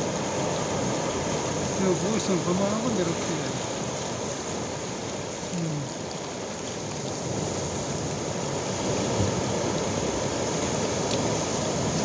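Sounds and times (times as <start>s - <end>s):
sea waves breaking on shore: 0.0s - 12.0s.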